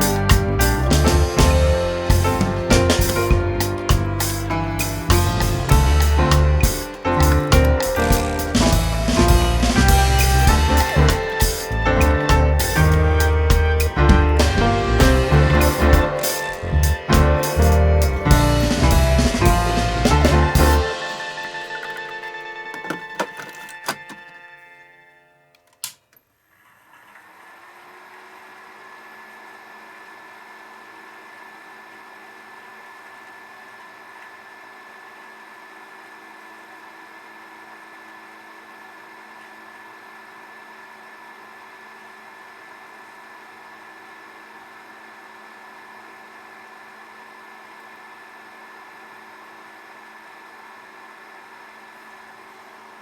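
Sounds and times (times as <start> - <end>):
cooling fan humming: 0.0 - 24.6.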